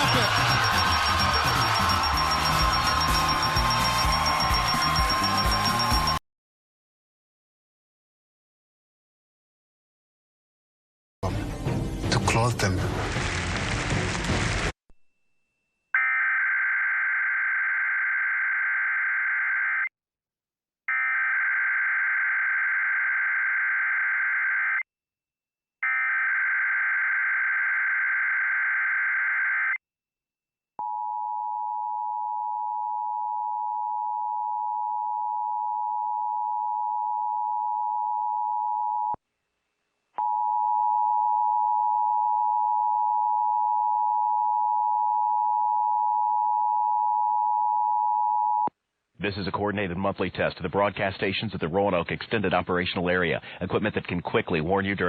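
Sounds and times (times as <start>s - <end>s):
two-tone attention signal: 0.0s - 6.2s.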